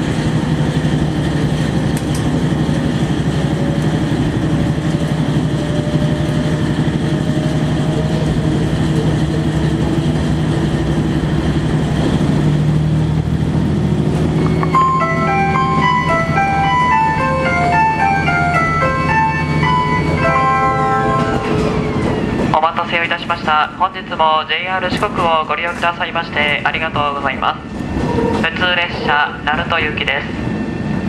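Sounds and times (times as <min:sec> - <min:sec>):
diesel railcar engine running: 0:00.0 - 0:31.0
onboard chime: 0:14.5 - 0:21.6.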